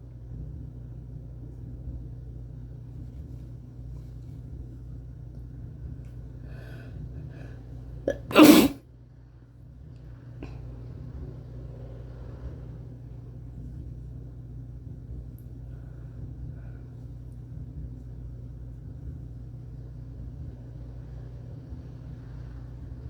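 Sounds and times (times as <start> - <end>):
person sneezing: 8.1 - 8.8.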